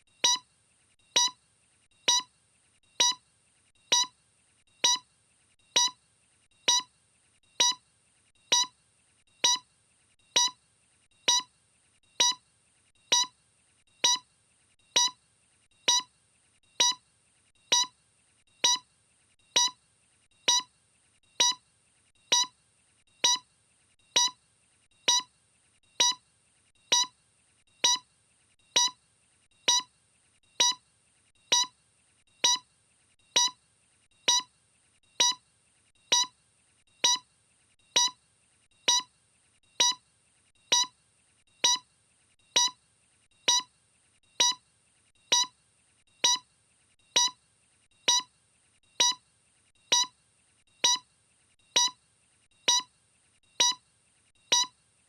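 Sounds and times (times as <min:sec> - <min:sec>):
short electronic beeps: 0:00.2 - 0:00.4, 0:01.2 - 0:01.4, 0:02.1 - 0:02.3, 0:03.0 - 0:03.2, 0:03.9 - 0:04.1, 0:04.8 - 0:05.0, 0:05.8 - 0:06.0, 0:06.7 - 0:06.9, 0:07.6 - 0:07.8, 0:08.5 - 0:08.7, 0:09.4 - 0:09.6, 0:10.4 - 0:10.6, 0:11.3 - 0:11.5, 0:12.2 - 0:12.4, 0:13.1 - 0:13.3, 0:14.0 - 0:14.2, 0:15.0 - 0:15.2, 0:15.9 - 0:16.1, 0:16.8 - 0:17.0, 0:17.7 - 0:17.9, 0:18.6 - 0:18.8, 0:19.6 - 0:19.8, 0:20.5 - 0:20.7, 0:21.4 - 0:21.6, 0:22.3 - 0:22.5, 0:23.2 - 0:23.4, 0:24.2 - 0:24.4, 0:25.1 - 0:25.3, 0:26.0 - 0:26.2, 0:26.9 - 0:27.1, 0:27.8 - 0:28.0, 0:28.8 - 0:29.0, 0:29.7 - 0:29.9, 0:30.6 - 0:30.8, 0:31.5 - 0:31.7, 0:32.4 - 0:32.6, 0:33.4 - 0:33.6, 0:34.3 - 0:34.5, 0:35.2 - 0:35.4, 0:36.1 - 0:36.3, 0:37.0 - 0:37.2, 0:38.0 - 0:38.2, 0:38.9 - 0:39.1, 0:39.8 - 0:40.0, 0:40.7 - 0:40.9, 0:41.6 - 0:41.8, 0:42.6 - 0:42.8, 0:43.5 - 0:43.7, 0:44.4 - 0:44.6, 0:45.3 - 0:45.5, 0:46.2 - 0:46.4, 0:47.2 - 0:47.4, 0:48.1 - 0:48.3, 0:49.0 - 0:49.2, 0:49.9 - 0:50.1, 0:50.8 - 0:51.0, 0:51.8 - 0:52.0, 0:52.7 - 0:52.9, 0:53.6 - 0:53.8, 0:54.5 - 0:54.7.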